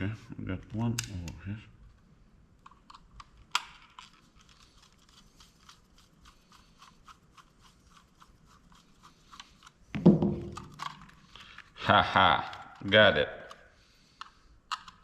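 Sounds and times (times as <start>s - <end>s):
small screwdriver clicks and scrapes: 2.6s - 9.8s, 14.2s - 15.0s.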